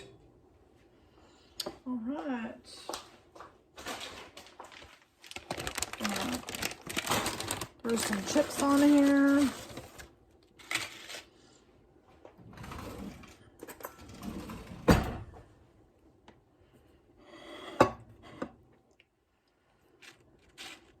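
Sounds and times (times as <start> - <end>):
chips rustling and scraping: 3.8 - 11.4, 19.8 - 21.0.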